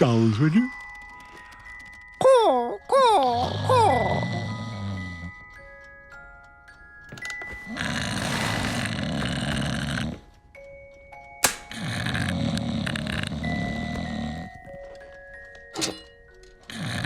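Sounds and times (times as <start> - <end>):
tinkling bell-like music: 0.0 - 17.0
person snoring loudly: 3.2 - 5.4, 7.7 - 10.2, 11.7 - 14.6, 16.7 - 17.0
sharp click: 11.4 - 11.8.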